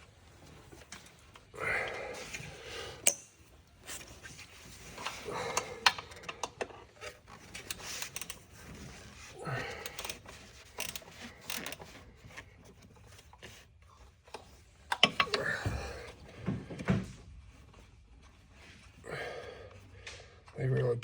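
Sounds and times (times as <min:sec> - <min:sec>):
heavy breathing: 0:01.5 - 0:03.1, 0:04.9 - 0:06.6, 0:07.7 - 0:11.7, 0:15.3 - 0:17.1, 0:19.0 - 0:20.6.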